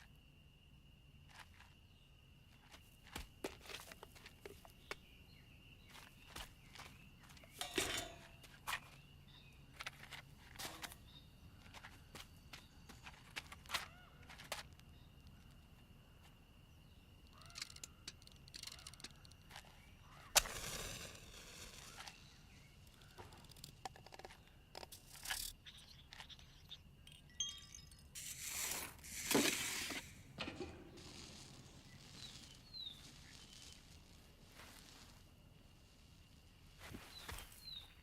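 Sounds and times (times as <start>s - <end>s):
faint steady high tone: 25.7s - 28.4s
chime-like tones: 27.3s - 28.2s.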